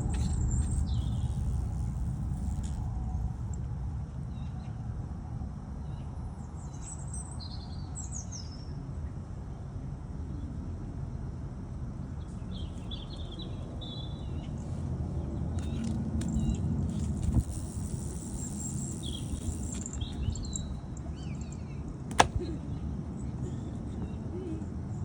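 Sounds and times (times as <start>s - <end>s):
small birds chirping: 0.0s - 2.8s, 15.5s - 22.3s
low steady rumble: 0.0s - 6.7s
sharp click: 22.1s - 22.4s.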